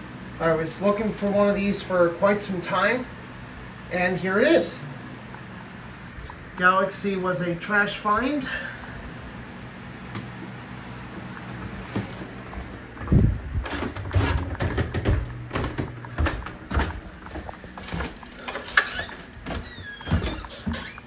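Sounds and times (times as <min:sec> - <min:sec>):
electric fans humming: 0:00.0 - 0:21.0
thumps and knocks: 0:13.0 - 0:21.0.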